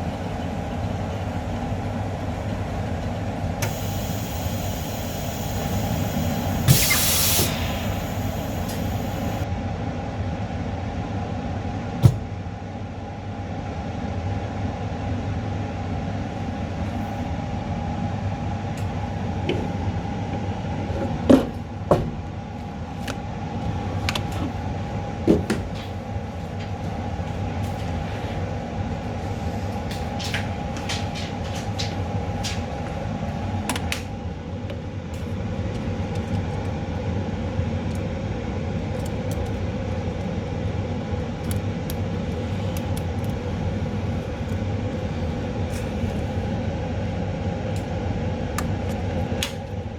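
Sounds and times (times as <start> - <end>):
mechanical drone: 3.6 - 9.4.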